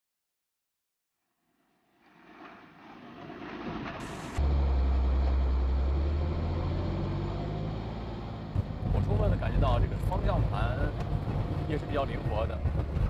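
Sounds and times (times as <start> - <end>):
vehicle engine deep drone: 3.9 - 13.0.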